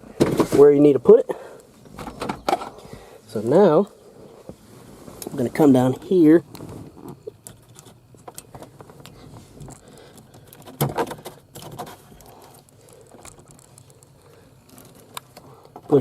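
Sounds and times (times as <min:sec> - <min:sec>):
plastic parts clicking and rattling: 0:07.1 - 0:16.0.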